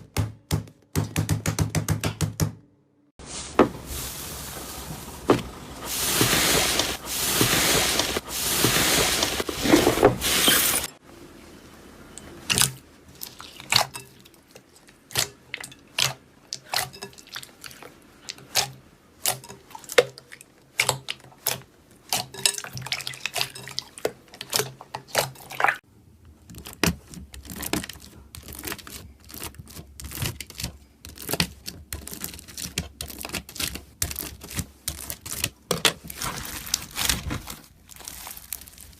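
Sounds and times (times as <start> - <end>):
slime squishing and crackling: 26.5 - 38.9.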